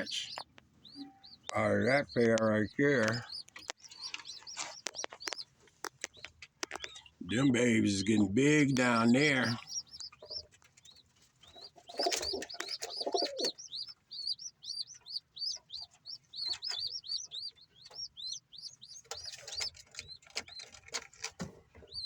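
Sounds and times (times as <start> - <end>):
baby pigeons peeping: 0.0 - 22.0
pigeon cooing: 11.7 - 13.6.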